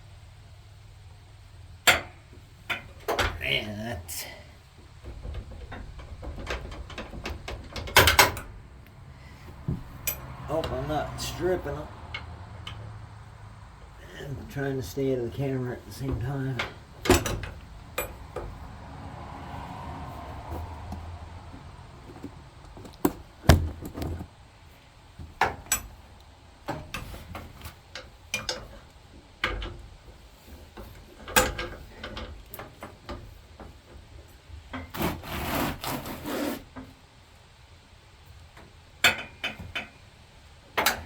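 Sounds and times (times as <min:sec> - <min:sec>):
metal tool clanking: 0:09.8 - 0:10.9, 0:16.0 - 0:18.6.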